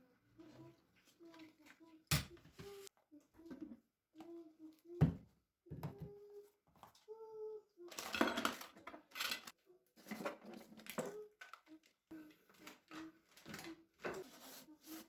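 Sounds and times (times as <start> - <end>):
pots and lids clattering: 8.0 - 11.0.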